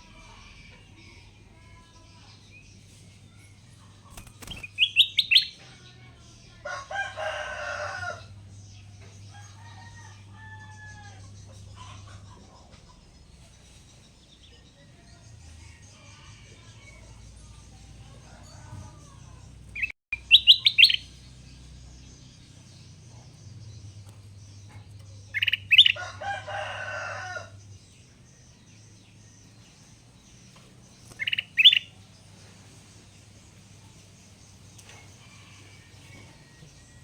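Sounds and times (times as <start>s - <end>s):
bird scratchy chatter: 3.8s - 5.6s, 19.8s - 21.1s, 31.0s - 32.0s.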